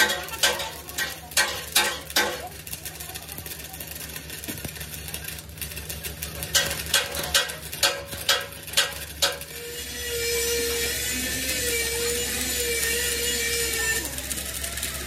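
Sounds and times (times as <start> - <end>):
hammer striking steel: 0.0 - 2.6, 6.4 - 14.0
low machine hum: 0.0 - 15.0.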